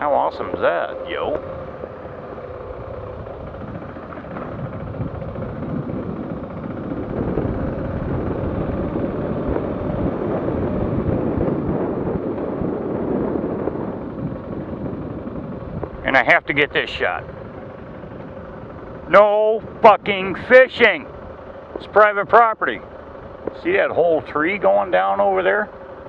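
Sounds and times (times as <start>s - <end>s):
car engine and road noise: 0.0s - 26.0s.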